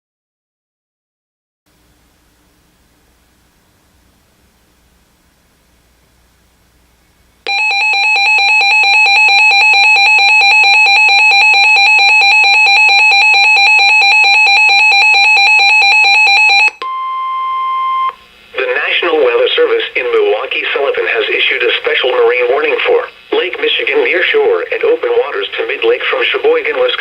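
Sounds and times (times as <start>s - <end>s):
steady single-pitch warning tone: 7.4s - 18.7s
rapid electronic alarm warble: 7.5s - 16.8s.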